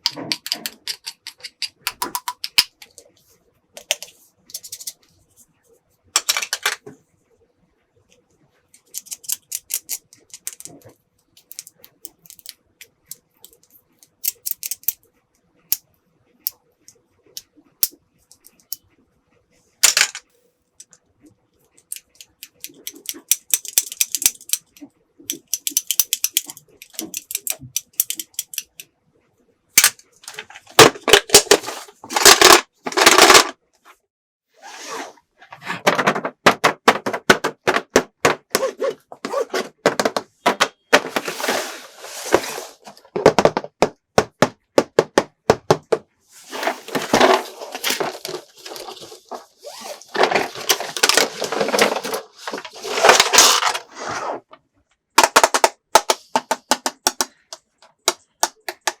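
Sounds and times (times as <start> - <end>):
plastic toy pieces clattering: 6.2 - 6.8, 19.8 - 20.2, 21.9 - 28.8, 29.8 - 33.5, 46.6 - 53.9.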